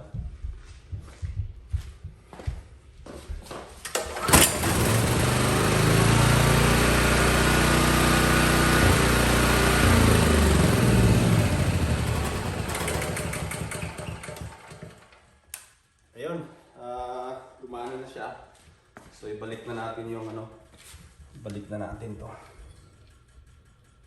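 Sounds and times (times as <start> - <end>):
generator engine pull-start: 3.8 - 15.3.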